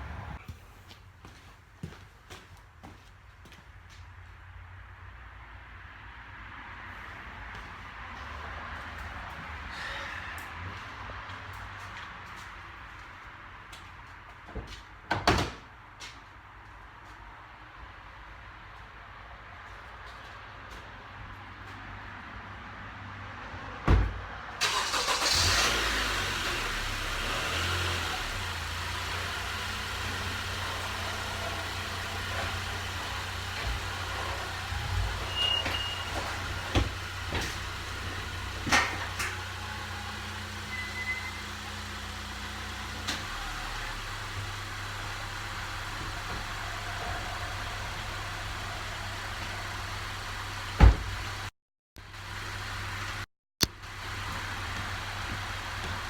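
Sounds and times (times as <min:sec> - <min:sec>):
car engine starting and idling: 0:23.9 - 0:56.0.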